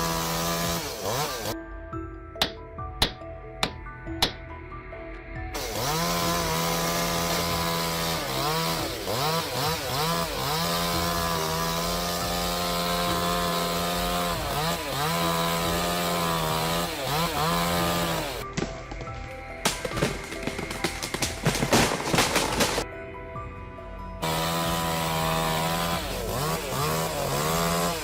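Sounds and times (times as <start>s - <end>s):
chainsaw running at high revs: 0.0s - 1.6s, 5.6s - 18.4s, 19.8s - 22.8s, 24.2s - 28.0s.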